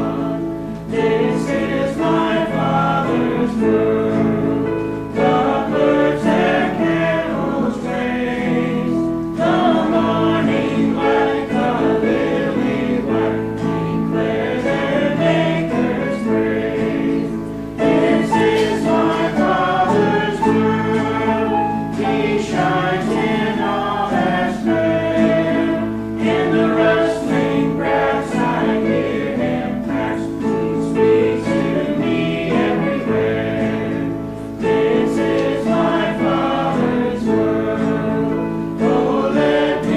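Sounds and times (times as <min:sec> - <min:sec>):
choir singing a gospel hymn: 0:00.0 - 0:39.9
musical accompaniment: 0:00.0 - 0:39.9.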